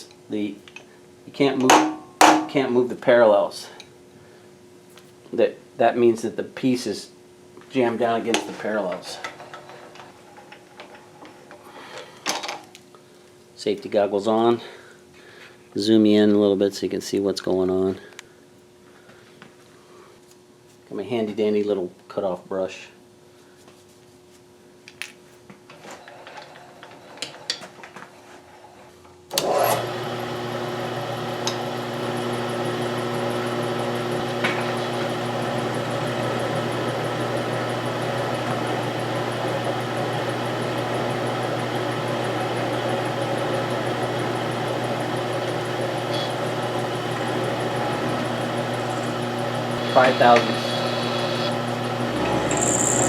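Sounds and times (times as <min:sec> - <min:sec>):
milling machine motor humming: 0:29.4 - 0:53.0.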